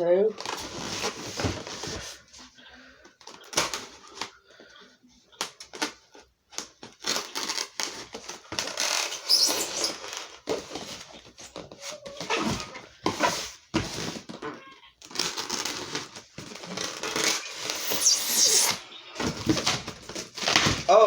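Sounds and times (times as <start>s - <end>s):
cardboard box rustling: 0.4s - 2.4s
packing tape being cut: 6.6s - 14.3s, 15.0s - 18.8s.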